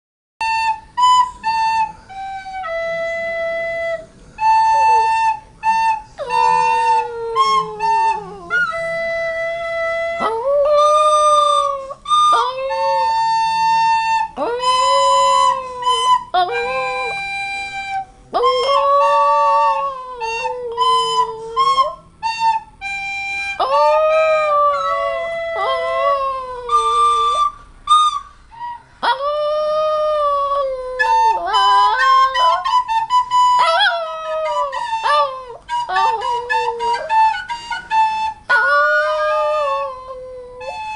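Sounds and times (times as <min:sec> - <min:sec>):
flute playing tune: 0:00.4 - 0:40.9
dog howling: 0:06.0 - 0:22.1, 0:23.6 - 0:27.6, 0:29.0 - 0:40.9.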